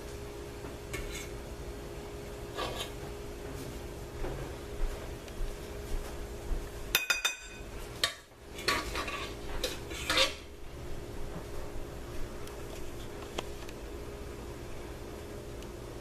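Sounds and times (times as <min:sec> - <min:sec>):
utensils clinking on a dish: 0:06.9 - 0:10.5.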